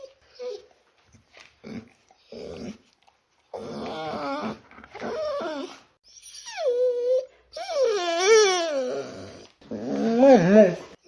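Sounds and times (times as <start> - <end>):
dog whining and yelping: 0.0 - 0.7, 3.6 - 11.0.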